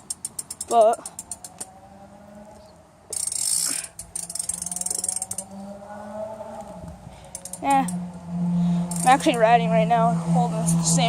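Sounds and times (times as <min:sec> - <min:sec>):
bike hub clicking rapidly: 0:00.0 - 0:01.7, 0:03.1 - 0:05.5, 0:07.2 - 0:08.0, 0:08.9 - 0:09.4.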